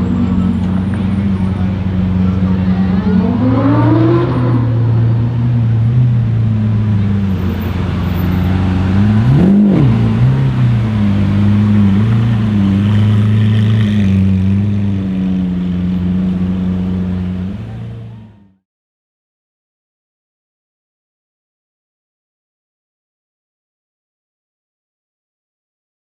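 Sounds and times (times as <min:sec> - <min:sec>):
car engine idling with loud exhaust: 0:00.0 - 0:03.8, 0:04.7 - 0:18.6.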